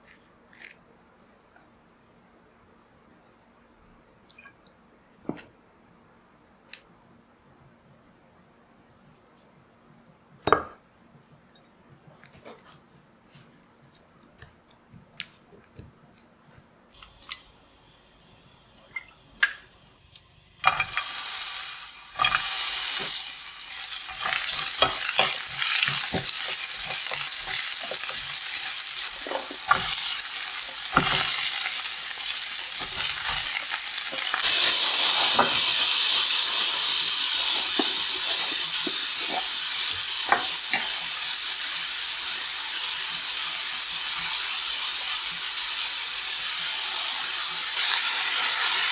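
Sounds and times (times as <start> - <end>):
food sizzling in hot pan: 17.0 - 48.9.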